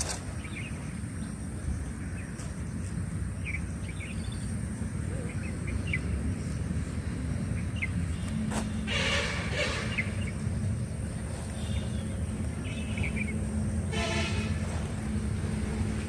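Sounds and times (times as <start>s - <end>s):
low outdoor rumble: 0.0s - 16.0s
bird chirps: 11.3s - 13.6s.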